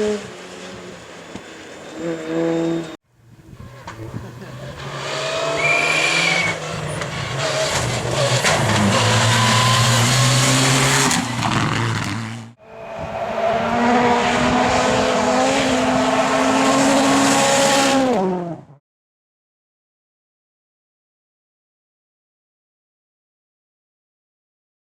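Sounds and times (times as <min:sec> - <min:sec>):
rally car engines running hard: 0:00.0 - 0:18.8.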